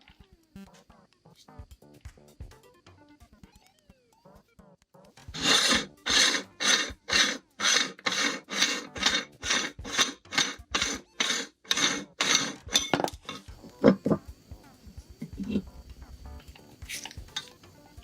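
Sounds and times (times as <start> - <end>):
short metallic clinks: 5.4 - 13.5
meat grinder rasping: 5.4 - 14.2.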